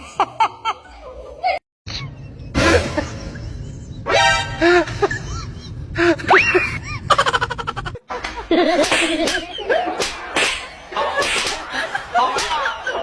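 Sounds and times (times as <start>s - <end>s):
people laughing: 4.5s - 13.0s.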